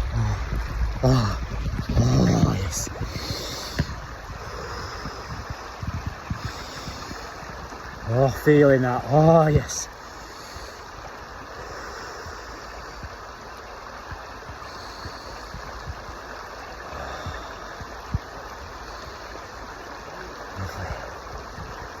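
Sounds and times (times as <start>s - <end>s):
faint low knocks: 0.0s - 7.7s
river rushing over stones: 0.0s - 22.0s.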